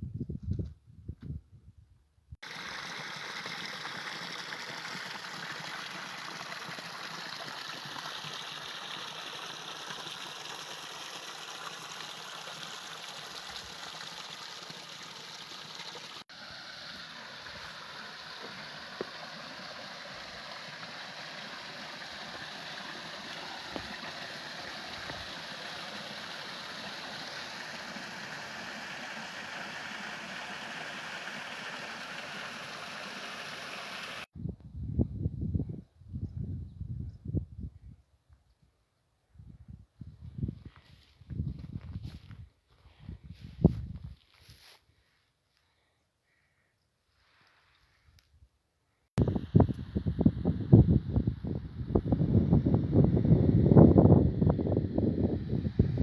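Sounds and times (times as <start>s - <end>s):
flowing water rushing: 2.4s - 34.3s.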